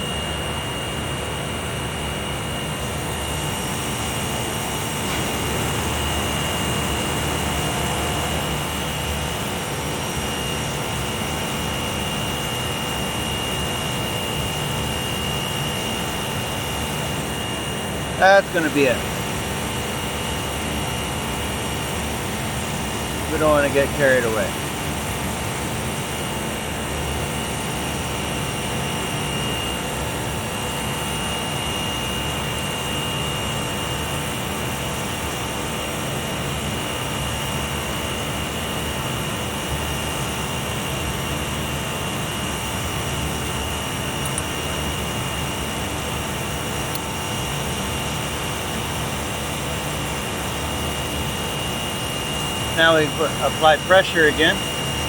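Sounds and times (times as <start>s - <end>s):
chiller plant low rumble: 0.0s - 12.8s
high machine whine: 0.0s - 55.0s.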